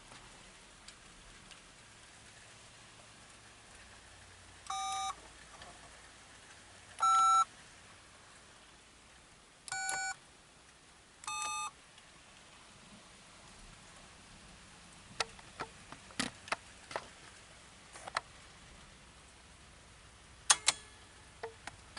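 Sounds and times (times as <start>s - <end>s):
two-tone touch-tone beeps: 4.7s - 5.2s, 7.0s - 7.5s, 9.7s - 10.2s, 11.2s - 11.7s.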